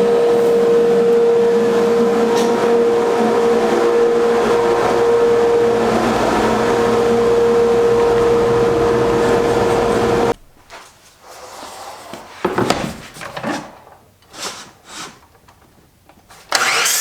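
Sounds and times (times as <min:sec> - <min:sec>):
constant machine whine: 0:00.0 - 0:10.4
dust collector air whoosh: 0:00.0 - 0:10.4.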